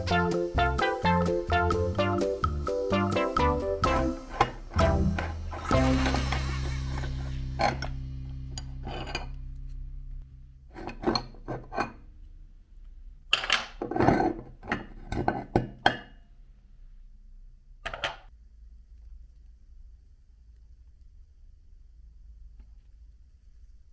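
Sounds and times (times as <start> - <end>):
held musical chord: 0.0 - 10.6.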